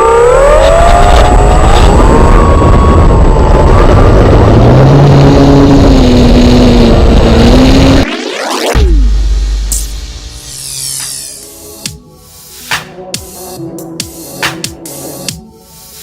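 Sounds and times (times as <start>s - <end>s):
wind rumble on microphone: 0.0s - 8.0s
electric motor and propeller whine: 0.0s - 8.3s, 10.0s - 12.6s.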